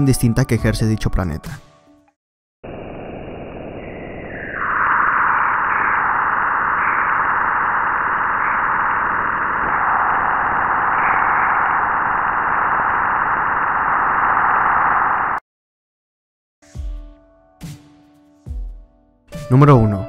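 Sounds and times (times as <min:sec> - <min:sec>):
steady rushing hiss: 0:02.7 - 0:15.4.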